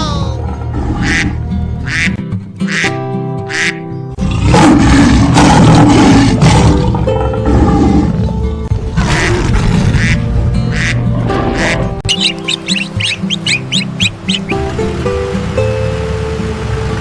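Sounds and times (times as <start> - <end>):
background music: 0.0 - 17.0
duck quacking: 1.0 - 3.8, 9.1 - 9.4, 10.0 - 14.6.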